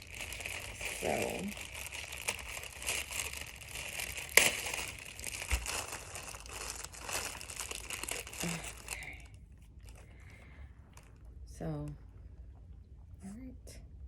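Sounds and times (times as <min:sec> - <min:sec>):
sharp crackle: 0:00.0 - 0:10.0
packaging crinkling: 0:00.0 - 0:11.1.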